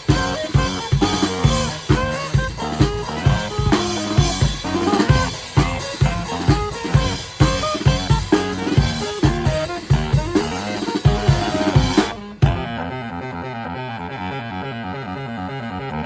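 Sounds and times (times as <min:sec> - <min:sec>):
bass drum and snare beat: 0:00.0 - 0:12.7
brass horn melody: 0:00.0 - 0:16.0.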